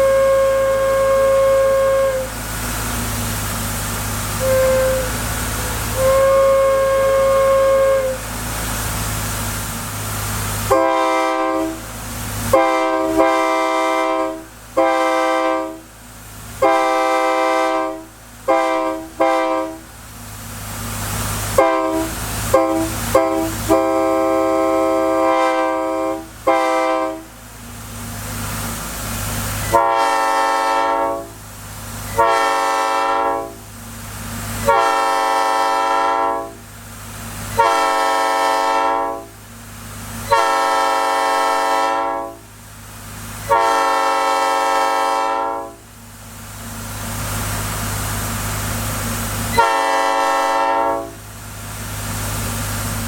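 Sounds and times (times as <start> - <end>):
single-note locomotive horn: 0.0 - 2.7, 4.3 - 8.4, 10.6 - 11.9, 12.5 - 15.9, 16.6 - 19.9, 21.5 - 27.4, 29.6 - 31.4, 32.1 - 33.7, 34.6 - 36.6, 37.5 - 39.4, 40.2 - 42.5, 43.4 - 45.9, 49.5 - 51.3
multi-chime air horn blasts: 4.4 - 8.2, 49.5 - 51.2.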